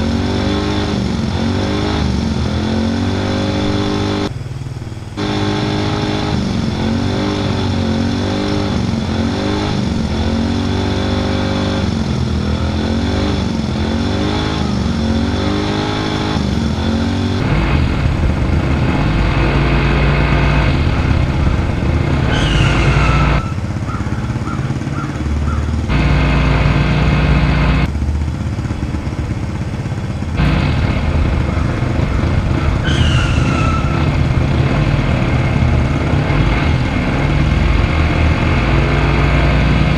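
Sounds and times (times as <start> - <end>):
deep loud engine running: 0.0 - 39.9
vehicle engine revving: 0.0 - 39.9
falling whistle: 22.2 - 23.7, 32.8 - 34.2.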